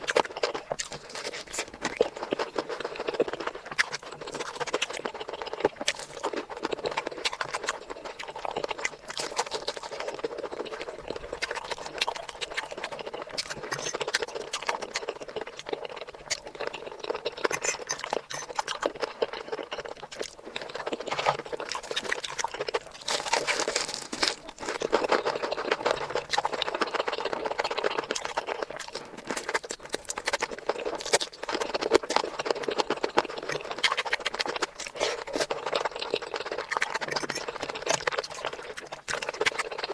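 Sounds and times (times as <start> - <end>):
wet chewing and lip smacking: 0.0 - 39.9
small clicks and crunches: 21.0 - 27.2.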